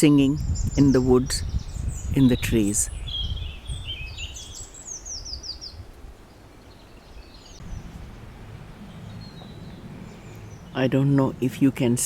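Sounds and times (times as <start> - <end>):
songbird singing high notes: 0.0 - 12.0
faint bird calls: 0.5 - 12.0
low steady rumble: 7.1 - 12.0.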